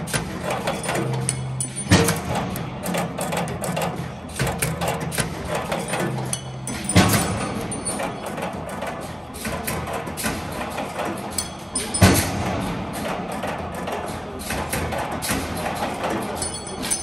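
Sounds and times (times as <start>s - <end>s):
heavy mechanical knocks: 0.0s - 17.0s
sharp mechanical clicks and clacks: 0.0s - 17.0s.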